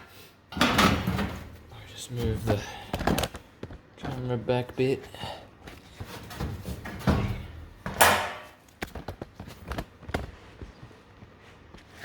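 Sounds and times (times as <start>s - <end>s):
handling knocks and clunks: 0.6s - 4.8s, 5.9s - 10.7s.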